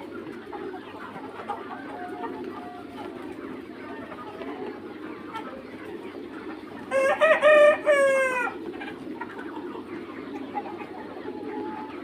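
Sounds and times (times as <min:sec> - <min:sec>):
cockerel crowing: 0:06.9 - 0:08.6.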